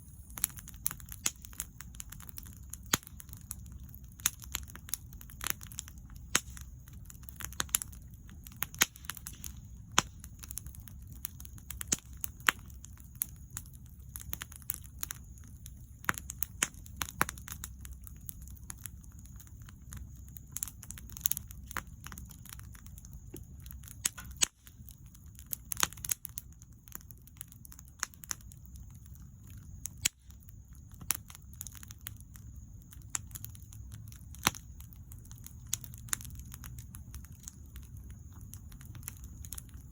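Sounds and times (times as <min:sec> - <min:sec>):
bonfire crackling: 0:00.0 - 0:39.9.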